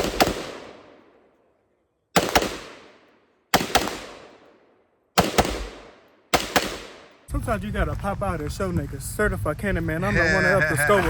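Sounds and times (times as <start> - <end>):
echoing gunshots: 0.0 - 7.3.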